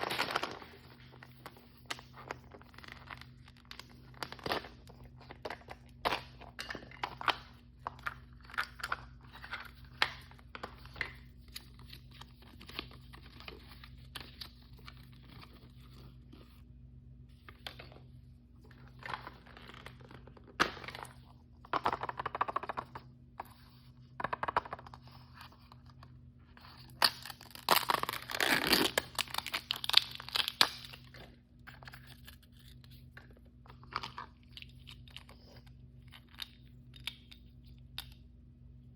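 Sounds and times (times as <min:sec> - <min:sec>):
plastic packaging crinkling: 0:00.0 - 0:16.4, 0:26.8 - 0:36.6
plastic packaging tearing: 0:26.9 - 0:31.2.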